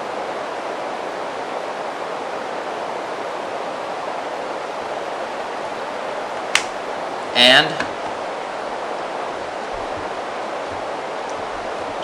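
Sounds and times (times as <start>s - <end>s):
sharp click: 6.6s - 6.8s.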